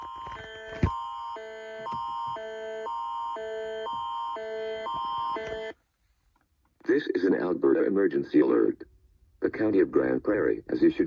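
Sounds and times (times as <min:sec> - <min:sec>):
two-tone electronic alert signal: 0:00.0 - 0:05.7.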